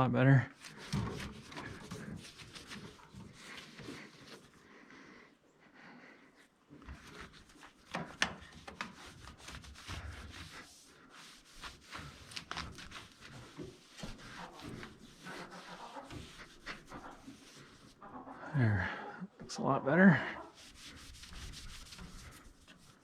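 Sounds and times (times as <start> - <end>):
wet cloth scrubbing pipe: 0.6 - 4.6, 7.0 - 18.0, 20.4 - 23.0.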